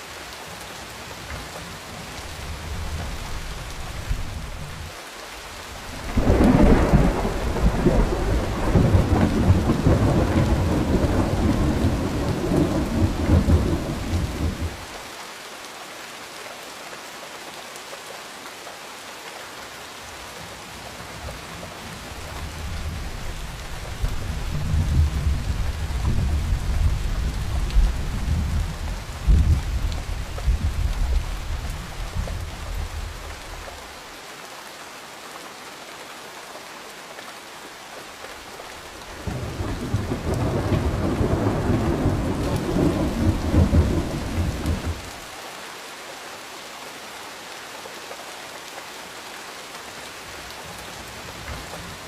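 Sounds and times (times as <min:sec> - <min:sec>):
steady rain falling: 0:00.0 - 0:52.0
thunder rumbling: 0:06.0 - 0:14.9, 0:39.2 - 0:45.1.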